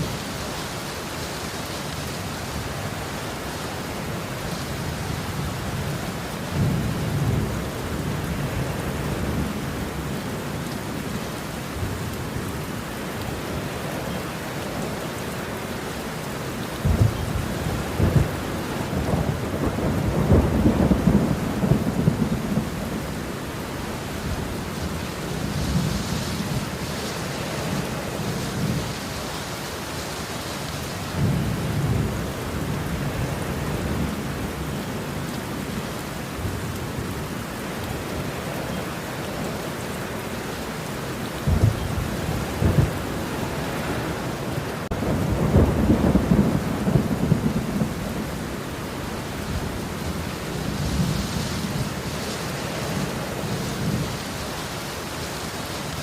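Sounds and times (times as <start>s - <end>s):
rain falling: 0.0s - 56.0s
thunder rumbling: 16.8s - 29.2s, 41.4s - 54.4s.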